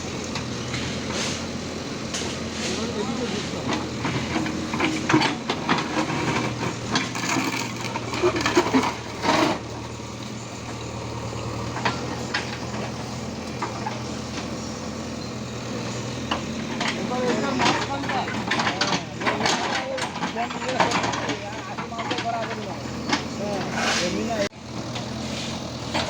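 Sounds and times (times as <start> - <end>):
diesel engine running: 0.0 - 26.0
metallic knocks and scrapes: 22.2 - 24.3.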